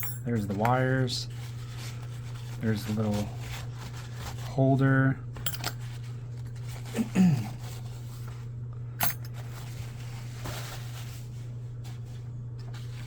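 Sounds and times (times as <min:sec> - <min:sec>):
metal tools being handled: 0:00.0 - 0:00.7, 0:05.4 - 0:06.0, 0:09.0 - 0:09.7
steady low hum: 0:00.0 - 0:13.0.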